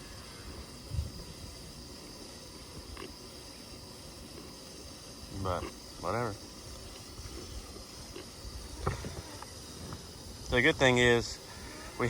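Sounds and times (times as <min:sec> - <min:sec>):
steady high hiss: 0:00.0 - 0:12.0
wind rumble on microphone: 0:00.8 - 0:01.7.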